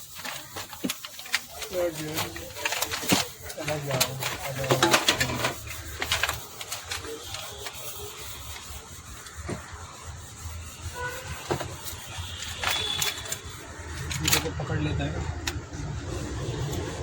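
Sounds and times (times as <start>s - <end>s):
tools clicking and knocking: 0.0s - 7.7s, 11.4s - 14.7s, 15.3s - 15.7s.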